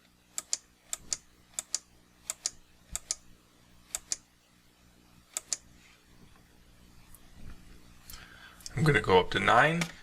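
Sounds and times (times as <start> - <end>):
computer mouse clicking: 0.4 - 3.2, 3.9 - 4.2, 5.3 - 5.7.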